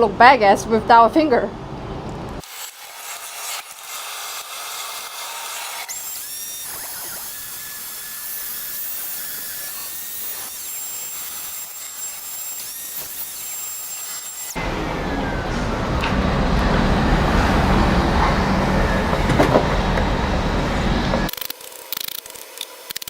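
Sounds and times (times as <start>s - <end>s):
spinning power tool on metal: 2.4s - 14.5s.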